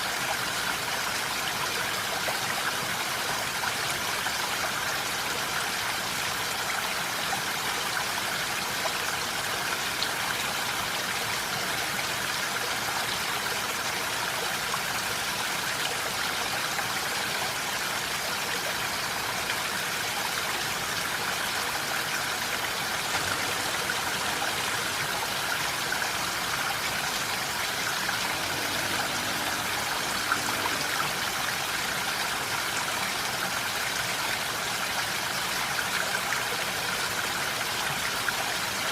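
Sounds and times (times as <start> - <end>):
steady rain hiss: 15.0 - 35.5.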